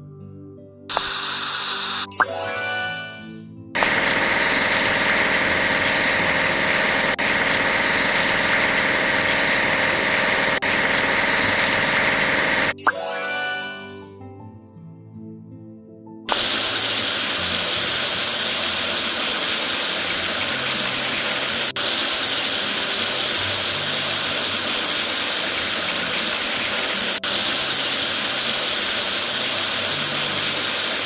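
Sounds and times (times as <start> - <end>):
soft background music: 0.0 - 31.0
spraying water hiss: 0.9 - 2.1, 3.8 - 12.8, 16.3 - 31.0.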